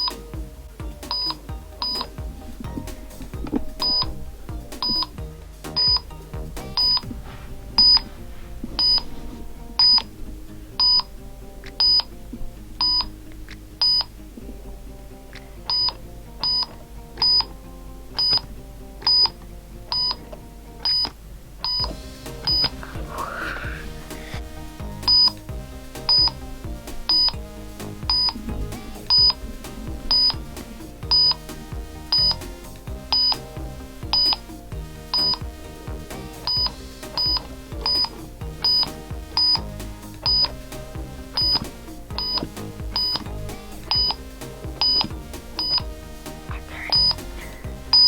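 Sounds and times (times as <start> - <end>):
upbeat electronic music: 0.0 - 48.0.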